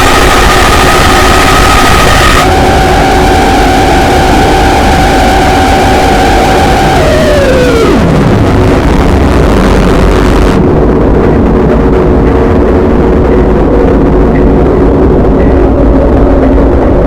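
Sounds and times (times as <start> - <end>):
distorted alarm tone: 0.0 - 10.8
harsh wall of noise: 0.0 - 17.0.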